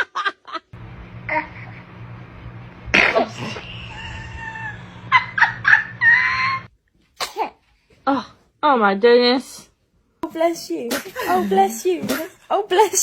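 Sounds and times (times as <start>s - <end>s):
steady low hum: 0.8s - 6.7s
baby sneezing: 3.0s - 3.6s, 7.2s - 7.6s, 10.9s - 11.4s
baby squealing: 3.8s - 5.0s.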